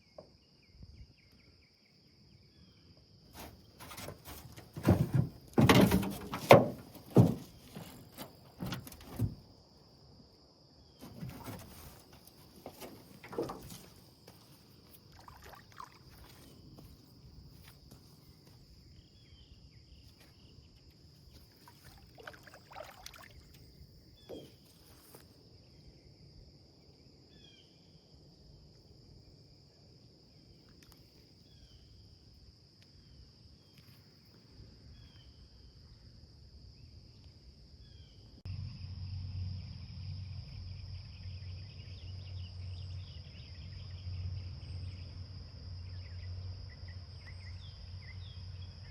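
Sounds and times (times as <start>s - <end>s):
insects chirping: 0.0s - 48.9s.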